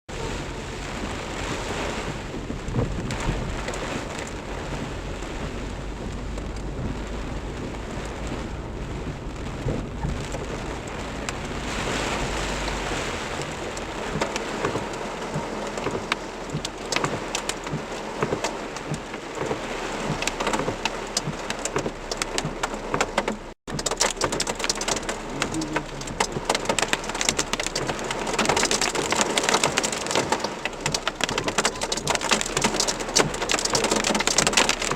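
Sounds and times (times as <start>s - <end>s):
low rumble of thunder: 0.1s - 22.9s
heavy rain downpour: 0.1s - 34.9s
hailstones striking: 8.9s - 34.9s.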